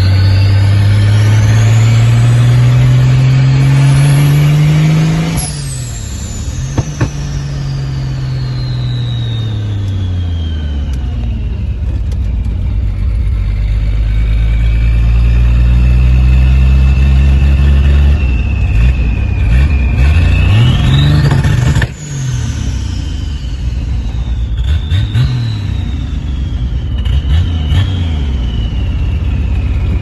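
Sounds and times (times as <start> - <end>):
turbo whistling: 0.0 - 12.3, 12.9 - 30.0
car engine revving: 0.0 - 30.0.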